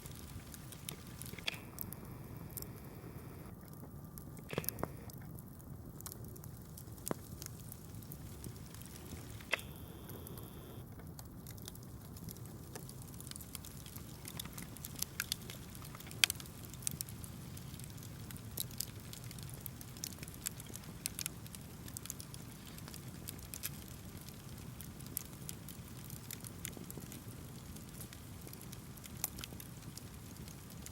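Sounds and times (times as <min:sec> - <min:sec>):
low steady rumble: 0:00.0 - 0:15.9
campfire wood crackling: 0:00.0 - 0:30.9.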